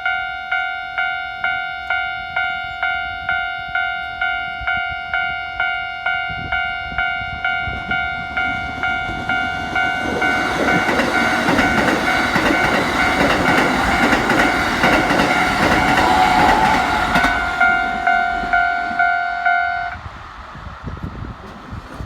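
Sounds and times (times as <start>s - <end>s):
crossing warning bell: 0.0s - 20.0s
train wheels clattering: 7.6s - 19.9s.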